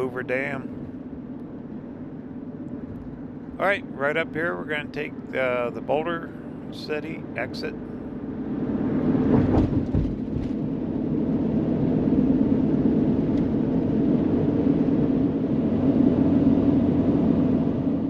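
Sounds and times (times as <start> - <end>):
road and engine noise in cab: 0.0 - 18.0
low thumps: 9.2 - 11.1.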